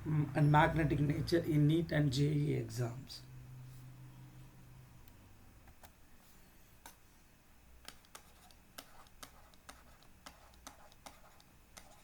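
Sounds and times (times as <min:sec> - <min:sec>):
faint clicks and taps: 0:07.8 - 0:12.0.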